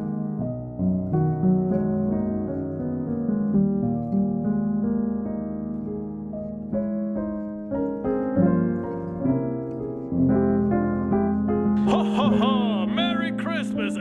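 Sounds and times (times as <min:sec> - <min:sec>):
soft piano music: 0:00.0 - 0:14.0.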